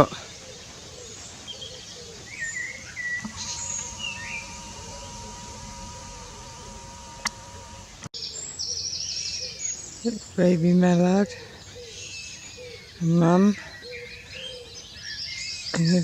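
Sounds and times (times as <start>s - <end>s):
click: 3.2s - 8.1s
faint buzzing hum: 3.2s - 8.1s.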